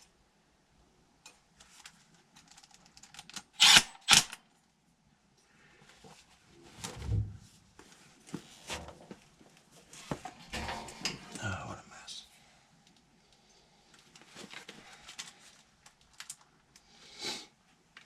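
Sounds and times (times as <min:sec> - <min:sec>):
dull deep thump: 0:07.0 - 0:07.4.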